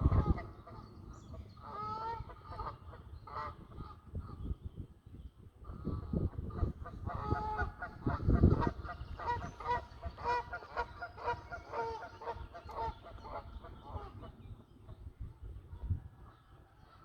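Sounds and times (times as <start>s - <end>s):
flock of birds calling: 6.9s - 14.5s.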